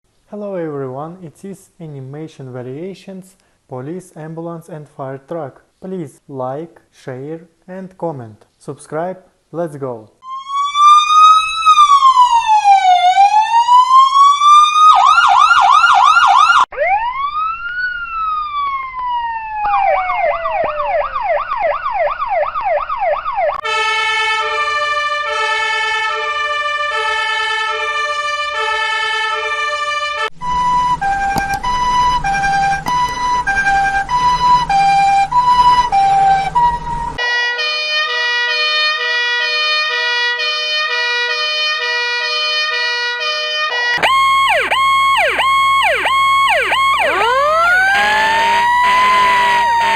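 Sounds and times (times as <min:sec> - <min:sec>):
siren wailing: 0:10.2 - 0:23.7, 0:30.4 - 0:37.2, 0:44.0 - 0:49.9
two-tone siren: 0:10.2 - 0:26.3, 0:30.4 - 0:37.2, 0:44.0 - 0:49.9
siren yelping: 0:10.3 - 0:23.6, 0:30.4 - 0:37.2, 0:44.0 - 0:49.9.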